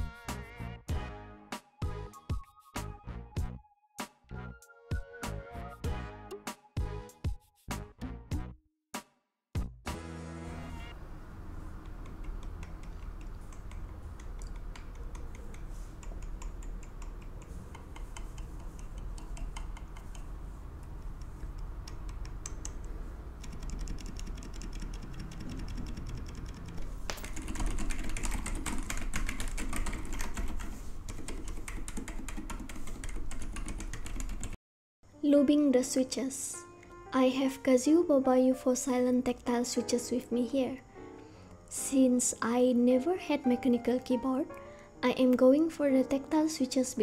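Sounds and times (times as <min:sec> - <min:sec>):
typing on a mechanical keyboard: 0:11.8 - 0:34.6.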